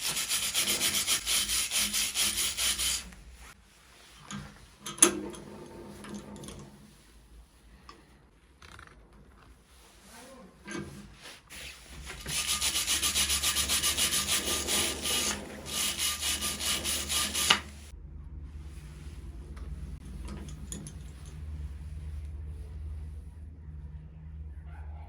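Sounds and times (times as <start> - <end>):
abrasive scrubbing on steel: 0.0 - 3.6, 11.5 - 17.9
faint scratches: 9.8 - 17.9.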